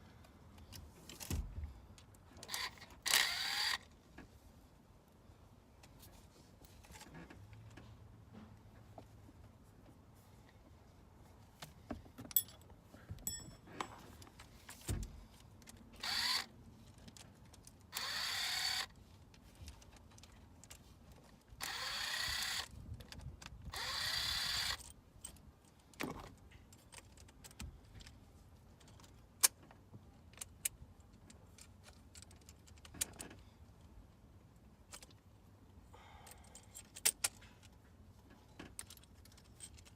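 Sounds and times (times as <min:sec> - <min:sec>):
cordless drill running in bursts: 0:02.6 - 0:03.8, 0:16.0 - 0:16.5, 0:18.0 - 0:18.9, 0:21.6 - 0:22.7, 0:23.8 - 0:24.8
hand tools clinking: 0:12.3 - 0:14.1.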